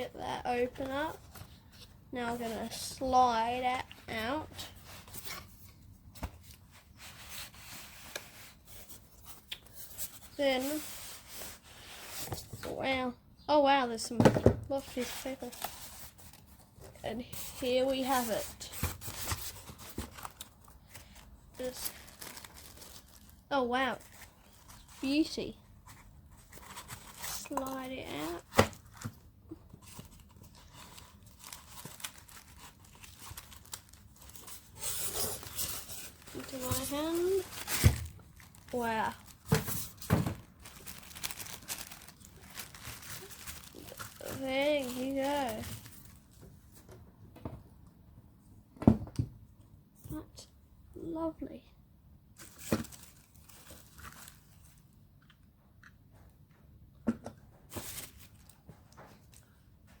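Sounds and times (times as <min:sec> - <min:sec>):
packaging rustling and crinkling: 0:14.8 - 0:46.6, 0:52.4 - 0:54.9, 0:57.7 - 0:59.4.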